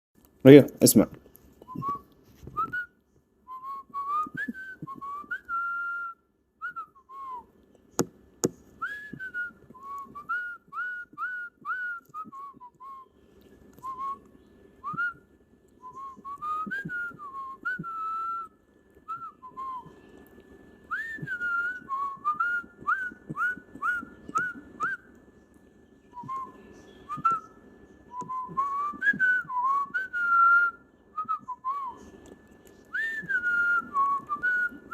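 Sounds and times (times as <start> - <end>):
cockatiel whistling: 15.8 - 18.5, 20.9 - 25.1, 26.2 - 34.9.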